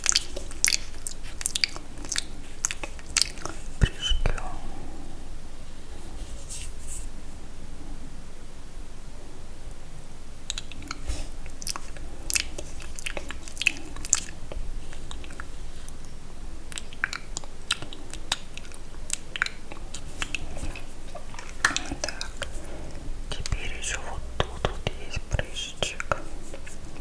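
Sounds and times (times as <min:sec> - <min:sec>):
wet mouth clicks and smacks: 0:00.0 - 0:04.5, 0:10.5 - 0:27.0.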